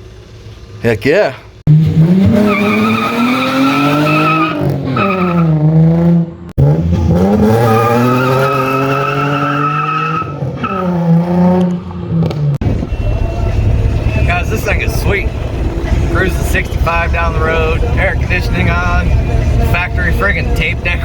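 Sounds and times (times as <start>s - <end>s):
car engine revving: 1.7s - 21.0s
high squeal of spinning tyres: 7.6s - 11.1s, 12.7s - 21.0s.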